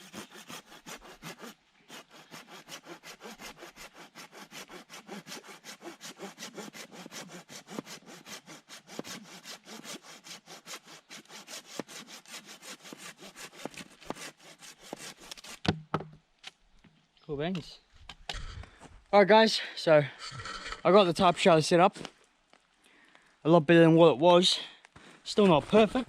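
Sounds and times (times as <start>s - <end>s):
hand saw cutting wood: 0.0s - 15.8s, 20.2s - 21.6s, 25.4s - 26.0s.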